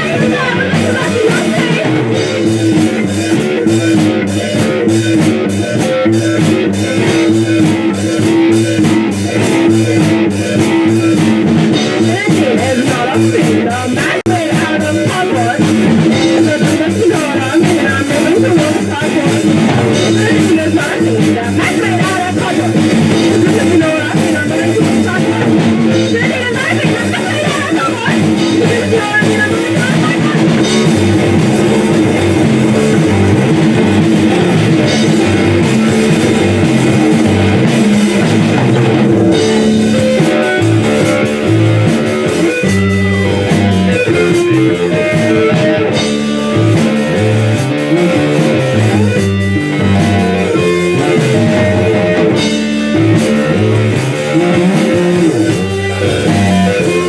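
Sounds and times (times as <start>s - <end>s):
bass guitar: 0.0s - 57.0s
drum kit: 0.0s - 57.0s
electric guitar: 0.0s - 57.0s.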